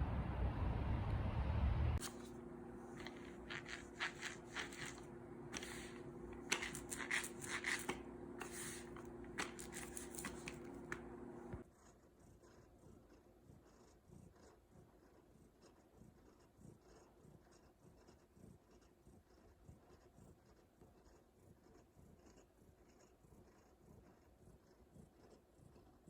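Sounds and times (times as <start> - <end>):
steady low hum: 0.0 - 11.7
rustling and scraping handling: 2.0 - 12.0.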